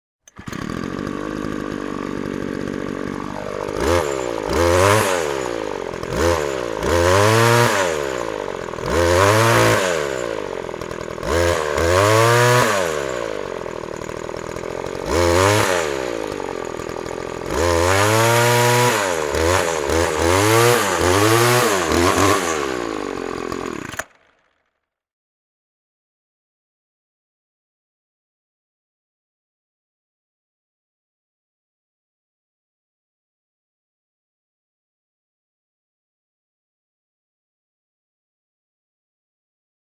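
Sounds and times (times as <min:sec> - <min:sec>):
string trimmer engine revving: 0:00.2 - 0:24.6.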